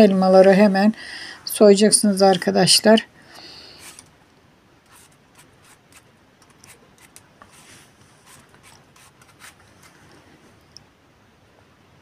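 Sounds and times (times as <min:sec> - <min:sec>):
peeler scraping apple skin: 0:04.9 - 0:07.6, 0:08.2 - 0:09.6.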